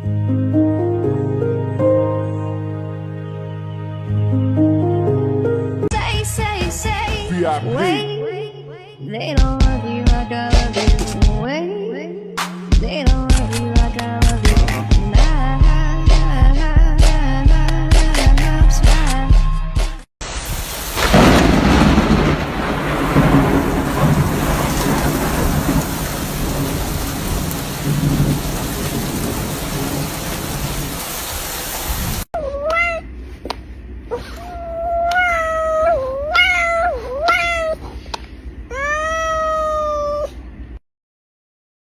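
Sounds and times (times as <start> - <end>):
rushing noise with low rumbles: 20.3 - 32.3
cat meowing: 34.2 - 37.8, 38.7 - 40.3.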